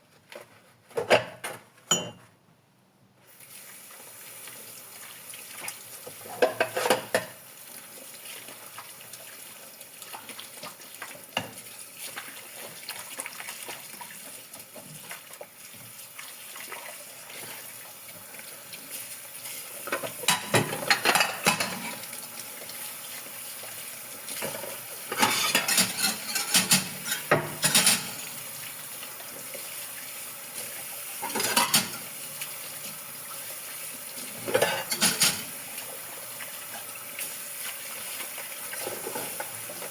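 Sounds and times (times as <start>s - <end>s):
dishes clattering in a sink: 0.9s - 2.3s, 6.1s - 7.4s, 19.9s - 22.1s, 24.4s - 28.5s, 31.2s - 32.2s, 34.3s - 35.6s, 38.7s - 39.9s
running water: 7.9s - 39.9s.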